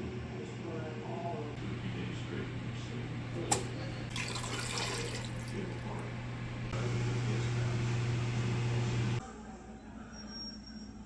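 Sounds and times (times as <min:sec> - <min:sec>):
electric hum: 0:01.6 - 0:09.2
water running: 0:03.4 - 0:09.2.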